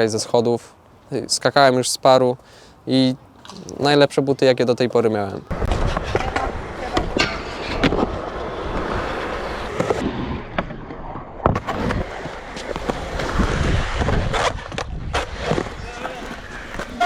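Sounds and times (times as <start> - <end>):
skateboard wheels rolling: 5.4 - 17.0
skateboard popping and landing: 5.5 - 17.0.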